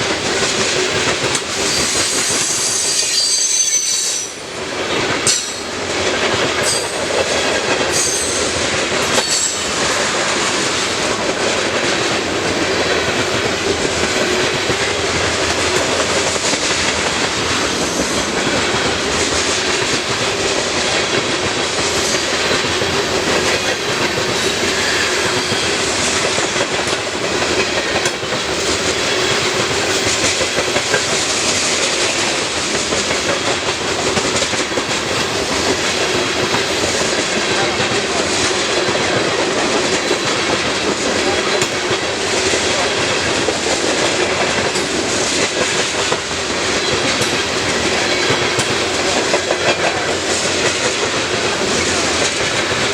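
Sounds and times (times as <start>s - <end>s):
wheels clicking over rail joints: 0.0s - 3.3s, 4.6s - 52.9s
train wheels rumbling on rails: 0.0s - 52.9s
faint squeal: 1.6s - 4.4s.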